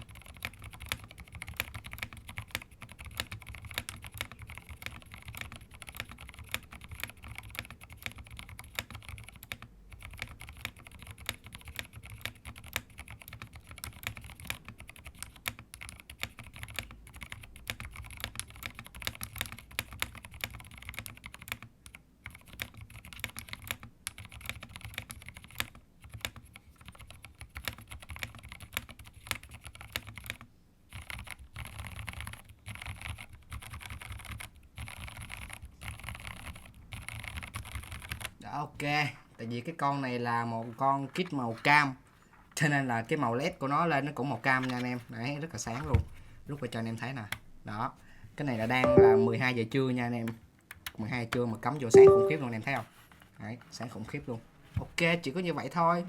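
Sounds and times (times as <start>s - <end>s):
fast typing on mechanical keyboard: 0.0s - 38.4s.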